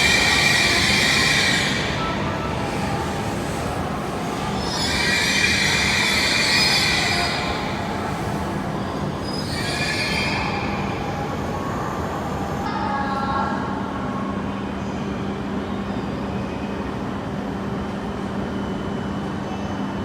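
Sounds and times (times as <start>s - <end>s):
train squealing: 0.0s - 12.7s
train hum: 0.0s - 12.9s.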